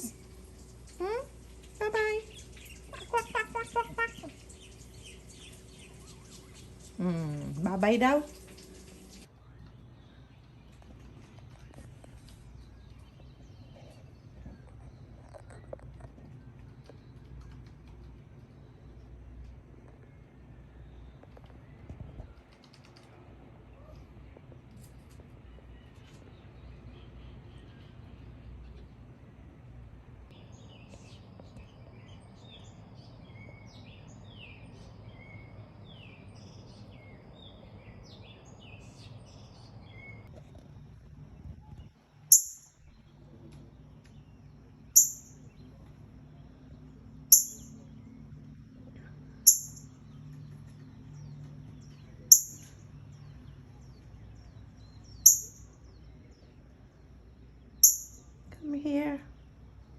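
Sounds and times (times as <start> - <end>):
low steady background hum: 0.0 - 59.9
faint bird chirps: 41.4 - 59.9
sharp high-pitched bird call: 42.3 - 42.8, 45.0 - 45.4, 47.3 - 47.8, 49.5 - 49.9, 52.3 - 52.7, 55.3 - 55.7, 57.8 - 58.2.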